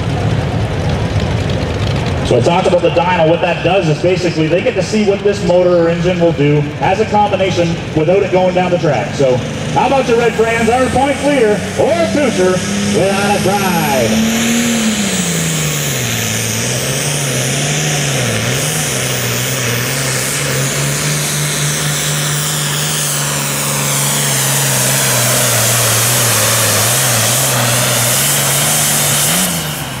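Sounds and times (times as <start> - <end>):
tractor diesel engine at full throttle: 0.0 - 30.0
high whine falling in pitch: 9.2 - 29.1.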